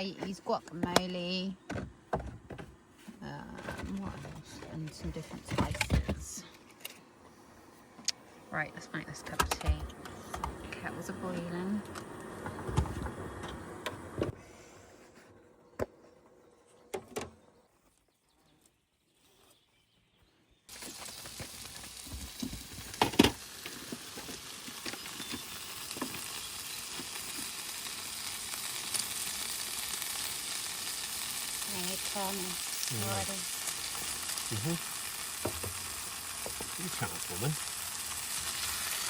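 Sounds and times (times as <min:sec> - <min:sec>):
cooking sizzling hiss: 0:00.0 - 0:01.6, 0:20.7 - 0:39.0.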